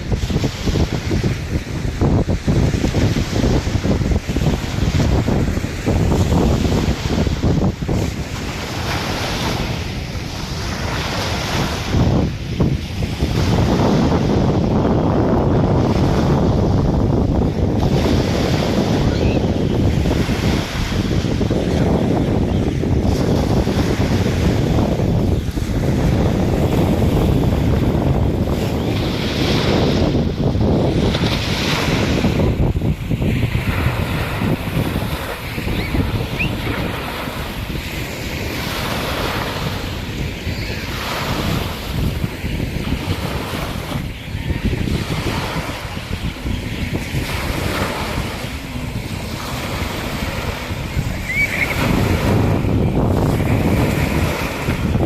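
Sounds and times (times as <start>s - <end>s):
surf washing on shore: 0.0s - 55.0s
wind buffeting microphone: 0.0s - 55.0s
waves hissing in: 47.5s - 53.6s.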